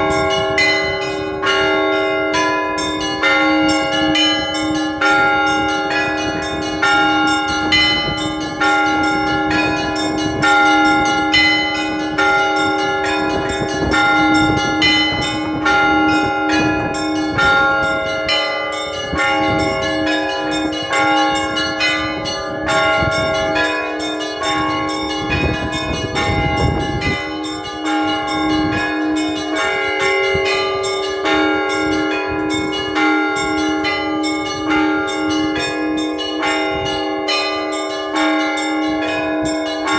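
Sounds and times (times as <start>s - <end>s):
deep church bell: 0.0s - 39.9s
smaller higher bells: 0.0s - 39.9s.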